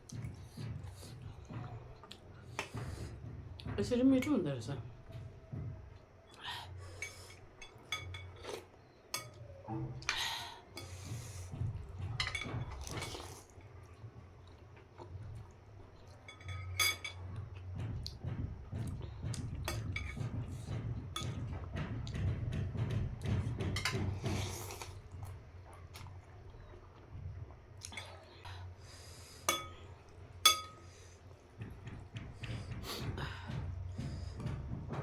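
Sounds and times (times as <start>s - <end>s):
utensil clinking against bowl: 7.0s - 9.5s, 16.2s - 18.4s, 29.4s - 32.9s.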